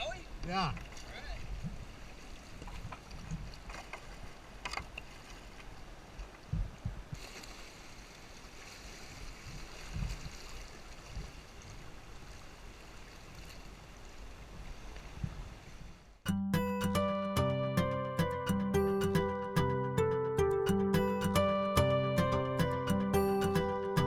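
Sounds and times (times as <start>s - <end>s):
water splashes: 0.0s - 15.8s.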